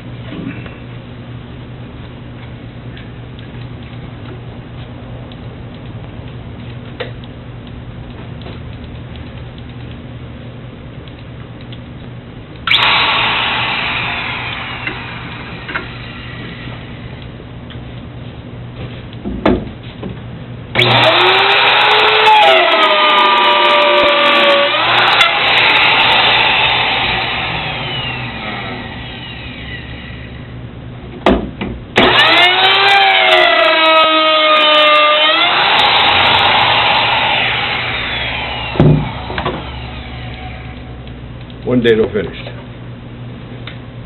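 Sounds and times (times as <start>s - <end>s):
electric router cutting wood: 12.7s - 17.0s, 20.8s - 30.4s, 32.0s - 40.8s.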